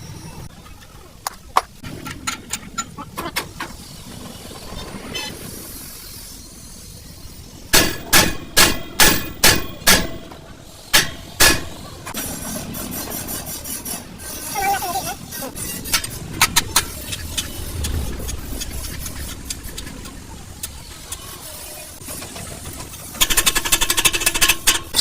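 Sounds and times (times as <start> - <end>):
hammer striking metal: 7.7 - 11.8.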